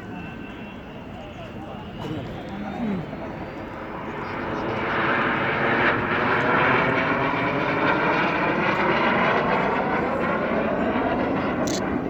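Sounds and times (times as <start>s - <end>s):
plane flying past: 2.4s - 12.0s.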